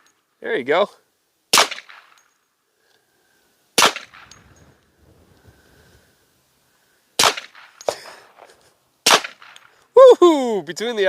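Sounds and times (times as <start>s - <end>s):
suppressed pistol shots: 1.5s - 2.2s, 3.8s - 4.8s, 7.2s - 8.4s, 9.0s - 9.7s.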